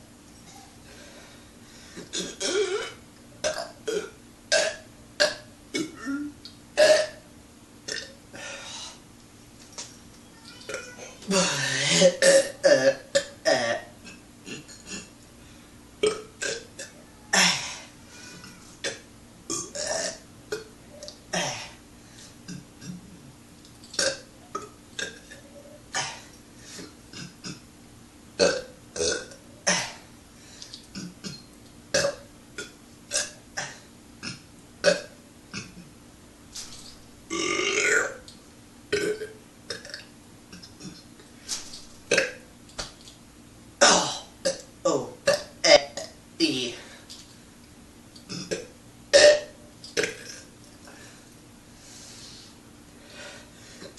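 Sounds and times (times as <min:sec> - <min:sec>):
faint steady hum: 0:00.0 - 0:53.9
man burping: 0:02.0 - 0:07.2, 0:07.9 - 0:08.4, 0:11.3 - 0:15.1, 0:16.0 - 0:17.8, 0:18.8 - 0:20.7, 0:21.3 - 0:21.8, 0:22.5 - 0:23.3, 0:24.0 - 0:26.4, 0:27.1 - 0:27.6, 0:28.4 - 0:30.0, 0:30.9 - 0:35.9, 0:37.3 - 0:38.2, 0:38.9 - 0:41.0, 0:42.1 - 0:42.4, 0:43.8 - 0:46.2, 0:48.3 - 0:50.5.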